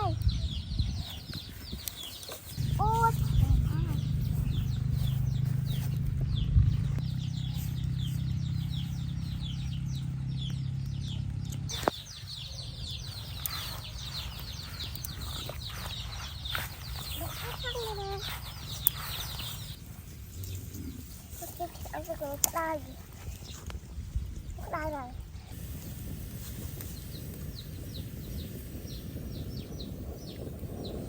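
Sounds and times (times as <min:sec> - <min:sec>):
chicks peeping: 0:00.0 - 0:26.2
steady low hum: 0:02.5 - 0:22.2.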